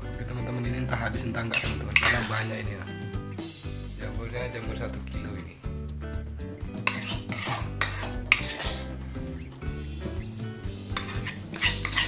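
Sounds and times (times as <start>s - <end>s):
spoon scraping a cooking pot: 1.1s - 2.7s, 6.8s - 9.1s, 10.9s - 12.0s.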